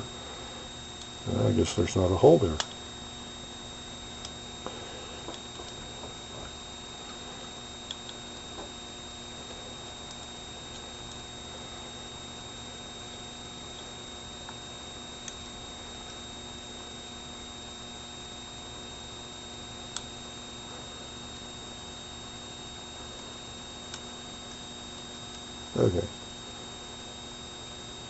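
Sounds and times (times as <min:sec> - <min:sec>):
electrical hum: 0:00.0 - 0:28.0
faint high whine: 0:00.0 - 0:28.0.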